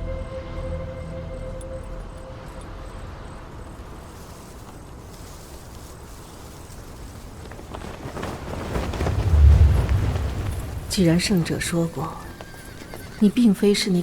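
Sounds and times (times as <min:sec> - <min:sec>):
insects chirring: 0:00.0 - 0:14.0
horse hoofbeats: 0:07.3 - 0:13.6.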